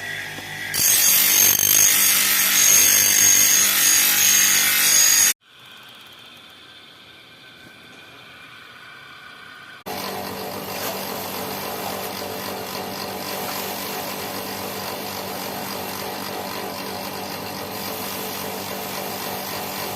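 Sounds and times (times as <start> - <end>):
power grinder grinding steel: 0.0 - 5.4.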